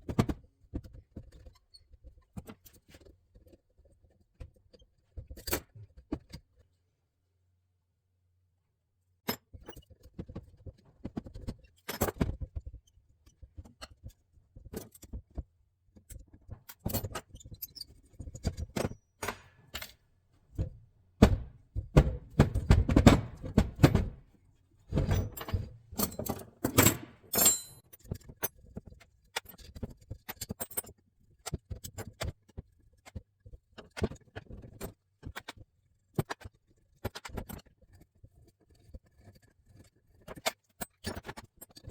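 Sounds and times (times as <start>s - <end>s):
metal parts clinking on workbench: 25.1s - 27.8s.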